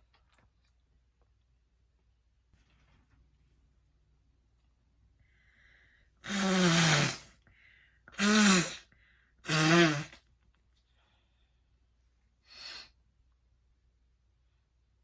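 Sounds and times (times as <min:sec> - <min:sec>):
short breath in: 0:05.2 - 0:06.2, 0:07.4 - 0:08.2.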